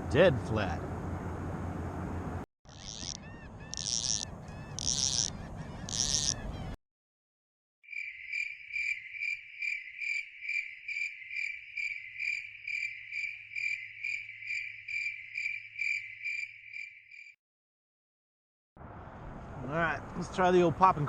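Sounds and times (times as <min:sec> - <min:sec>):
cricket chirping: 0:02.7 - 0:05.3, 0:05.9 - 0:06.4, 0:07.8 - 0:17.4.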